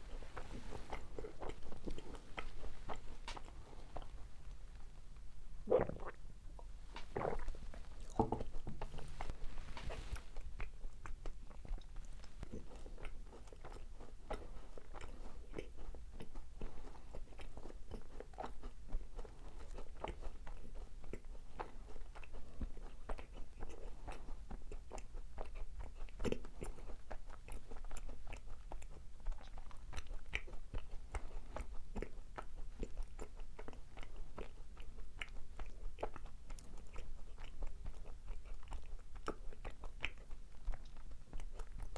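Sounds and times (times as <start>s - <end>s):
crunchy biting and chewing: 0.0s - 4.6s, 6.9s - 41.9s
wet mouth clicks: 5.7s - 13.8s.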